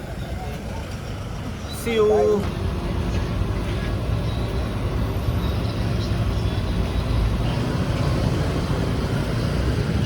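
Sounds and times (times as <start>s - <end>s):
wind and road noise: 0.0s - 10.0s.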